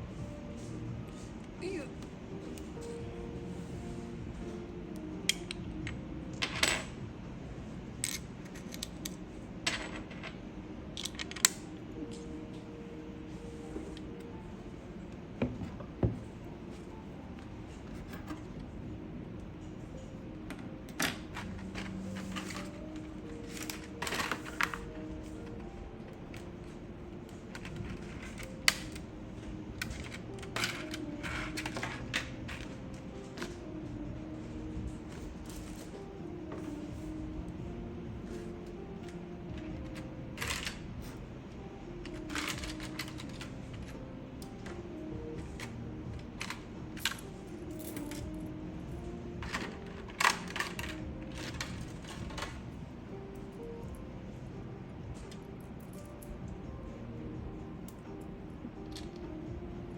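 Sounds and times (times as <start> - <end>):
faint background music: 0.0 - 59.9
keyboard parts clicking: 42.0 - 47.3.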